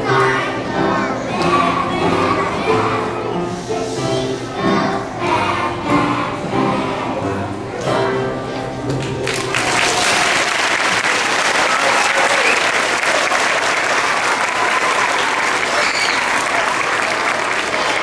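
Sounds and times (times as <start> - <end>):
audience applauding: 9.0 - 18.0.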